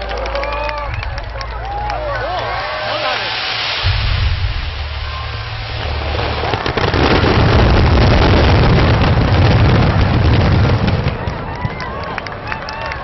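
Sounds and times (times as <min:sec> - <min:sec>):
fireworks crackling: 0:00.0 - 0:13.0
fireworks booms: 0:03.0 - 0:12.2.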